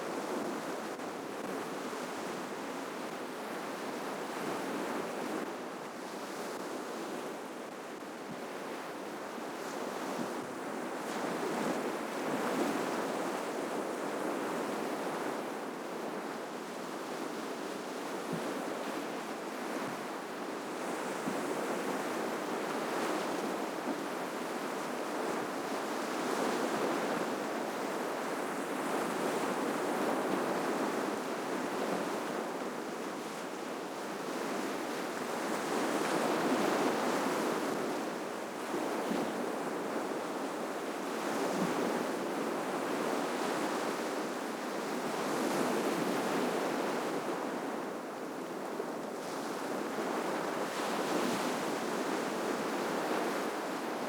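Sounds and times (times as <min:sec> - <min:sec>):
ocean waves breaking on shore: 0:18.3 - 0:54.0.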